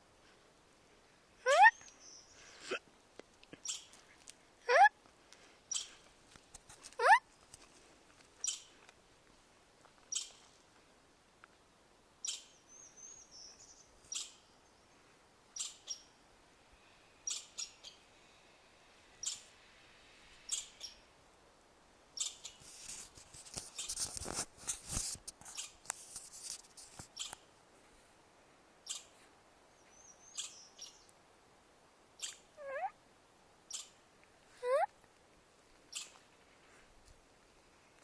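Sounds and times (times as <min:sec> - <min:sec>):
chipmunk chip calls: 0:03.6 - 0:04.0, 0:05.7 - 0:06.0, 0:08.4 - 0:08.7, 0:10.1 - 0:10.4, 0:12.2 - 0:13.2, 0:14.1 - 0:14.4, 0:15.6 - 0:16.1, 0:17.2 - 0:18.0, 0:19.2 - 0:19.4, 0:20.5 - 0:21.0, 0:22.2 - 0:22.7, 0:25.5 - 0:25.8, 0:27.1 - 0:27.4, 0:28.8 - 0:29.1, 0:29.9 - 0:31.1, 0:32.2 - 0:33.0, 0:33.7 - 0:34.0, 0:35.9 - 0:36.2.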